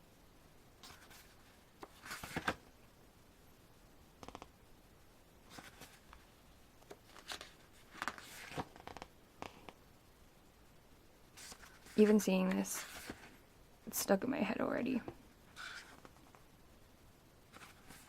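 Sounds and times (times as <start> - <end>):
paper rustling and crinkling: 0.8 - 2.7, 5.5 - 6.2, 6.9 - 9.6, 11.4 - 13.4, 15.6 - 16.4, 17.5 - 18.0.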